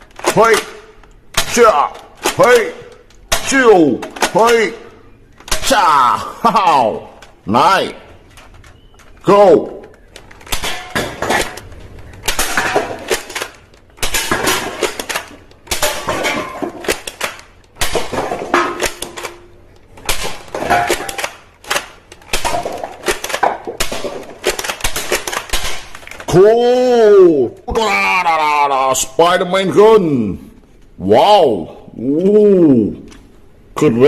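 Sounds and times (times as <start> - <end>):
plastic toy guns clattering: 0.0 - 7.5, 8.1 - 26.4.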